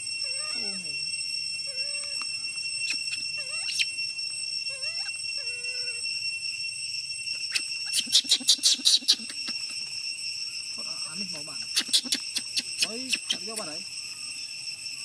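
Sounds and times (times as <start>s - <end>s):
insects chirring: 0.0s - 15.0s
baby monkey crying: 1.7s - 2.2s, 2.9s - 3.9s, 4.7s - 6.0s, 7.5s - 9.8s, 11.6s - 13.8s.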